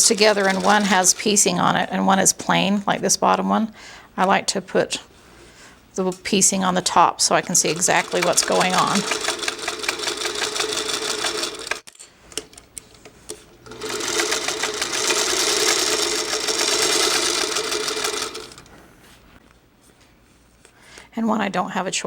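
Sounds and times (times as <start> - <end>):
electric sewing machine stitching: 0.0 - 1.8, 7.2 - 11.8, 13.6 - 18.7.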